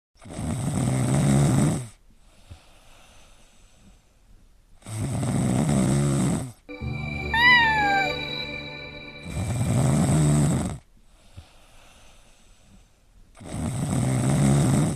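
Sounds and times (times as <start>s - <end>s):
steady electronic tones: 6.7s - 10.3s
pet snoring: 13.4s - 14.9s.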